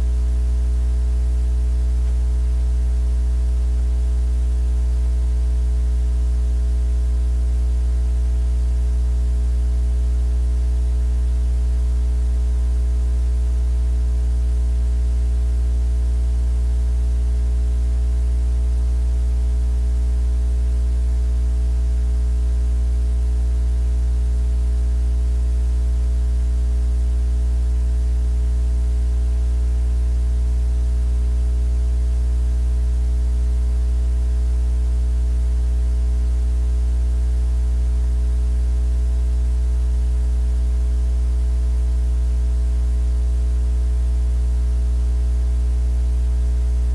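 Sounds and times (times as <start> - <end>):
loud low hum: 46.5 - 46.9.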